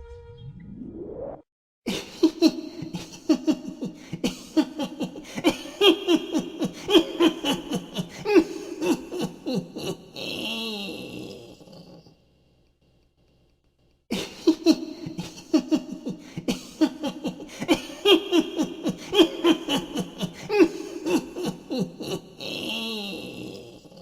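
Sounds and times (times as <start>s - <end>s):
witch's cackling laugh: 2.2s - 11.3s, 16.8s - 23.7s.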